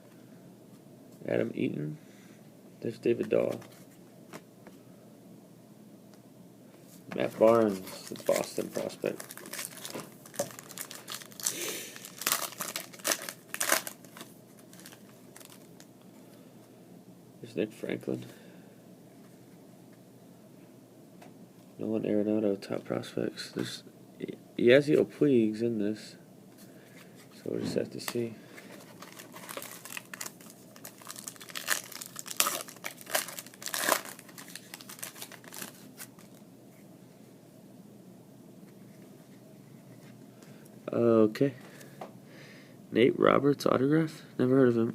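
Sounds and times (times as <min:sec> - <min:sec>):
card packaging crinkling: 0:07.2 - 0:15.8, 0:28.0 - 0:36.4.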